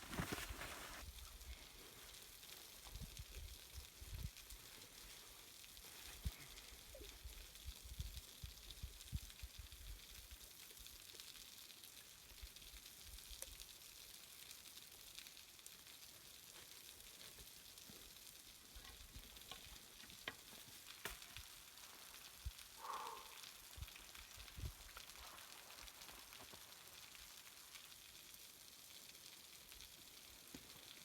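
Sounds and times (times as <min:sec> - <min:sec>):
soft clicks and crackles: 0:00.0 - 0:07.6, 0:16.4 - 0:22.6
faint steady hiss: 0:00.0 - 0:31.0.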